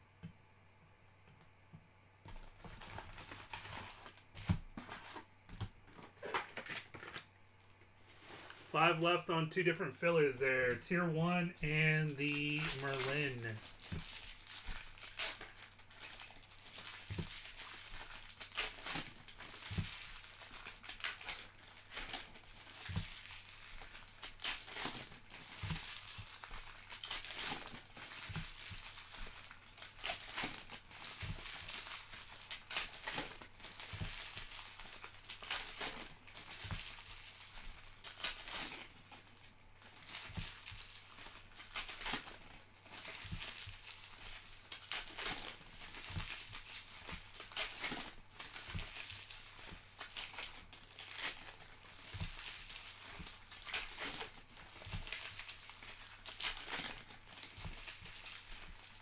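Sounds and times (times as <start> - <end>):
card wrappers crinkling and tearing: 2.4 - 7.3, 12.3 - 59.0.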